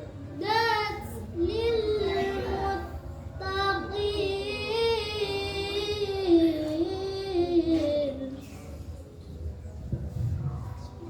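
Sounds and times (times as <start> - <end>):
girl reciting melodically: 0.2 - 8.8.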